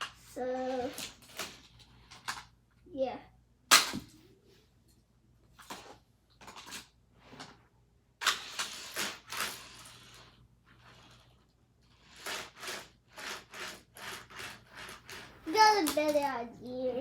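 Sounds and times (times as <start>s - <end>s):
toy cars clattering on plastic track: 0.0s - 2.6s, 5.6s - 7.6s, 8.2s - 16.4s.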